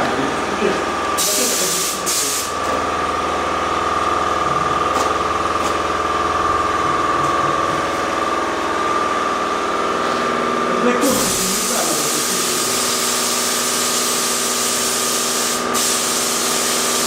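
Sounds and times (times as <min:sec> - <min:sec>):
air compressor whining: 0:00.0 - 0:17.0
spray gun air hiss: 0:01.2 - 0:02.6, 0:11.0 - 0:17.0.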